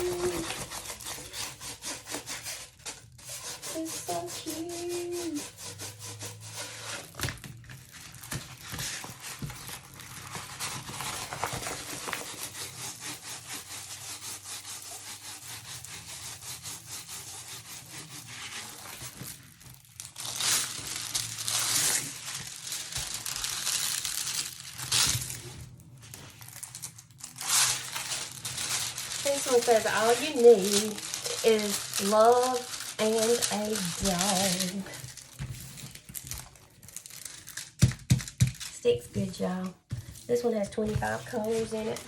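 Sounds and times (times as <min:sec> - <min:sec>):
plastic film crinkling: 0:00.0 - 0:01.4, 0:06.6 - 0:13.8, 0:17.3 - 0:42.0
hands rubbing canvas: 0:00.0 - 0:07.2, 0:11.1 - 0:19.4, 0:27.4 - 0:34.9.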